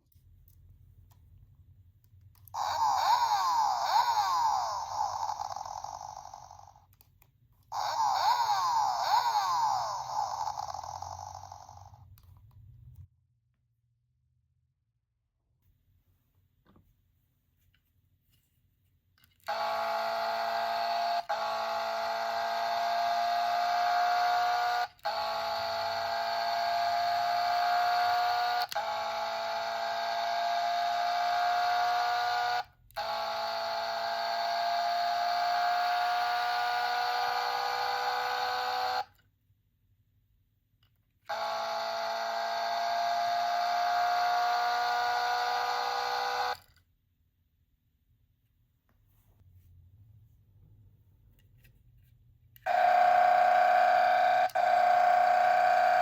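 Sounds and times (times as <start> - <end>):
toy buzzing electronic tone: 2.5 - 6.9, 7.7 - 12.1, 19.4 - 39.2, 41.3 - 46.7, 52.6 - 56.0.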